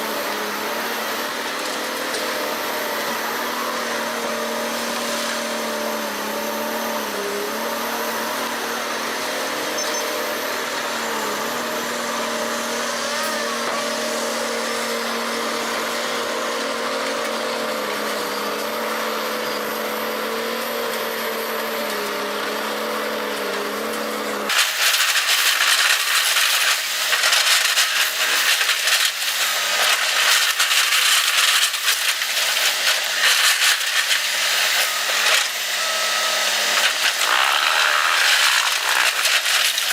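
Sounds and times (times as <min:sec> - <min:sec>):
harsh crackling and rattling: 0:24.5 - 0:35.6, 0:36.6 - 0:39.9.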